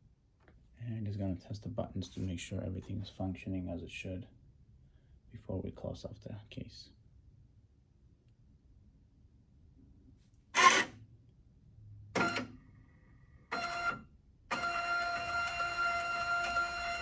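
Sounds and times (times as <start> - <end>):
label printer feed whining: 10.6 - 10.9, 12.2 - 12.5, 13.5 - 17.0.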